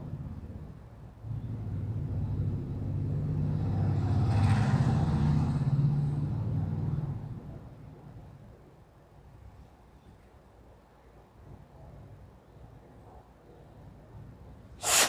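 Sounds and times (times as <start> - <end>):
vehicle passing by: 1.4 - 7.4.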